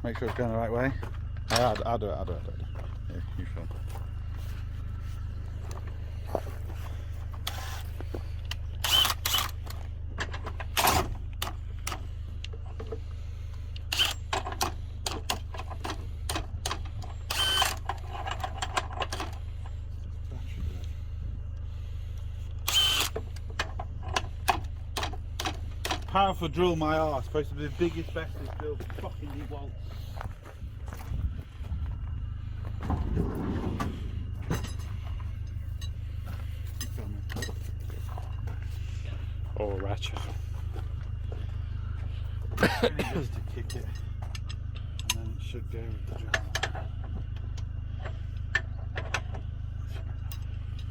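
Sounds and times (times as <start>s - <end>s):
steady low hum: 0.0s - 50.9s
cordless drill straining: 8.8s - 9.7s, 13.9s - 14.4s, 17.3s - 17.9s, 22.7s - 23.2s
hand tool clicks and clanks: 13.8s - 19.4s, 22.7s - 26.2s, 46.3s - 46.9s
grinding rattle: 32.8s - 38.4s.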